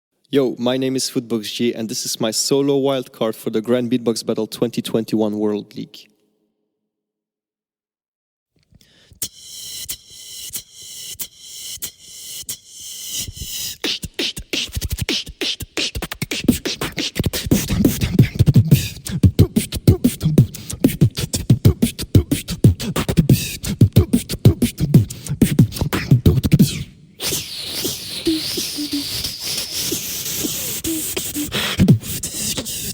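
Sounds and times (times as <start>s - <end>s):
person beatboxing: 9.1s - 32.9s.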